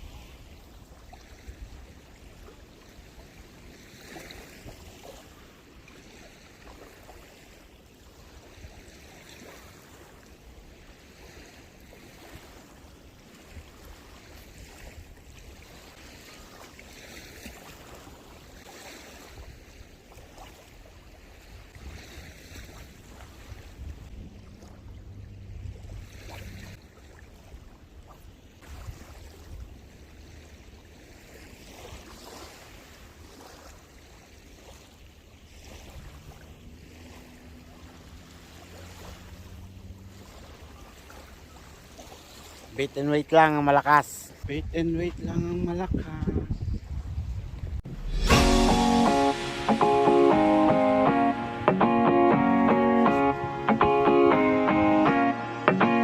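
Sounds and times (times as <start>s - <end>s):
sea waves washing ashore: 0.0s - 56.0s
wind rumbling on microphone: 21.2s - 26.8s, 44.4s - 49.0s.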